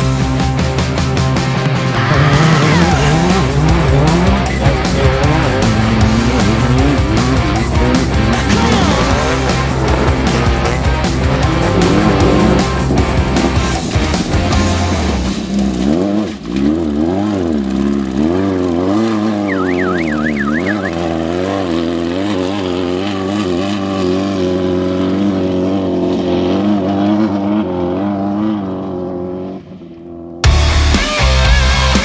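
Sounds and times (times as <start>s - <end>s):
race vehicle engine revving: 0.0s - 32.0s
high warbling tone: 19.3s - 21.6s.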